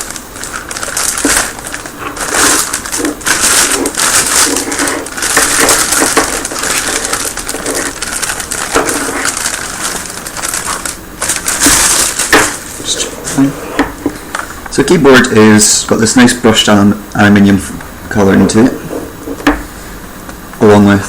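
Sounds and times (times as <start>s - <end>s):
packaging crinkling and rustling: 0.0s - 14.5s.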